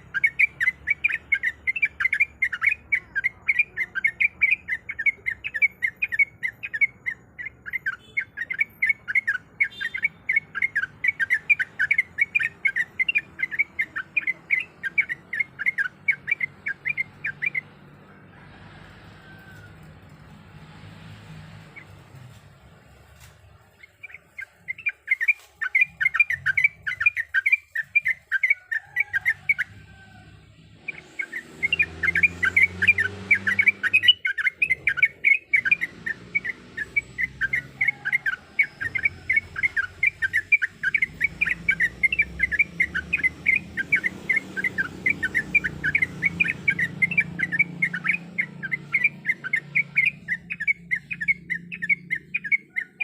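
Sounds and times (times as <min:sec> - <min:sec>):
bird singing sharp chattering notes: 0:00.0 - 0:17.8, 0:23.2 - 0:29.6.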